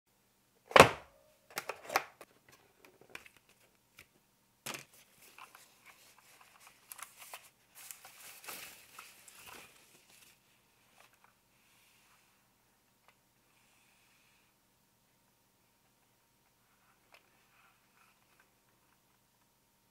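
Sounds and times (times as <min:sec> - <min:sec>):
packaging rustling and crinkling: 0:04.8 - 0:11.3.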